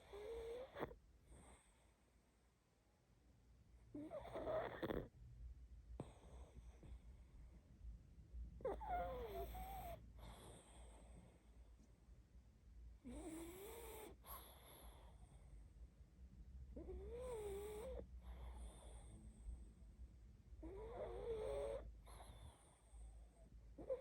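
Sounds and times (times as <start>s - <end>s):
dog snoring: 0.0s - 1.9s, 3.9s - 5.2s, 6.0s - 7.0s, 8.6s - 11.4s, 13.0s - 15.6s, 16.7s - 19.4s, 20.6s - 24.0s.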